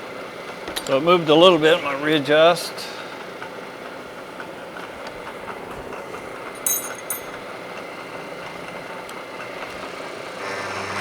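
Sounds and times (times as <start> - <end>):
machine shop hum: 0.0 - 11.0
metallic clinks of vise: 6.6 - 7.4.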